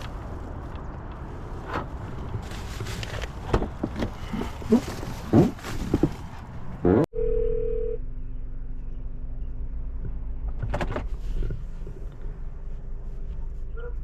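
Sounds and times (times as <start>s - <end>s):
phone ring tone: 7.2s - 8.0s.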